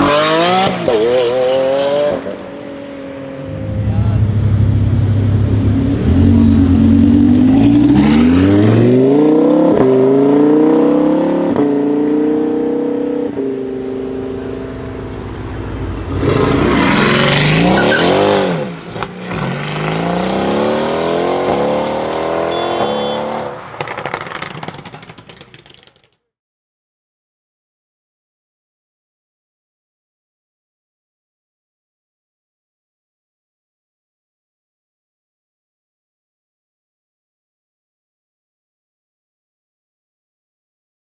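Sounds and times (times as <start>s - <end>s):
car engine accelerating with upshifts: 0.0s - 24.2s
car passing close by: 11.9s - 24.2s.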